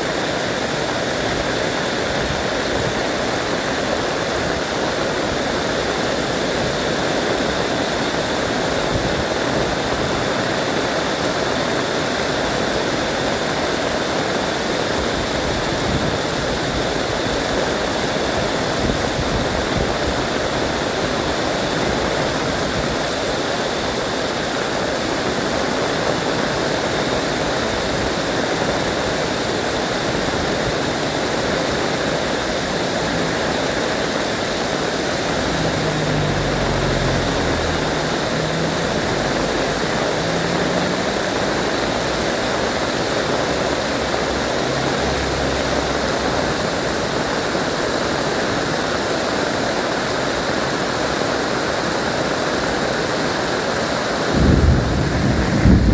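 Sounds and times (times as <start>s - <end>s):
heavy rain pouring: 0.0s - 55.9s
low rumble: 54.3s - 55.9s.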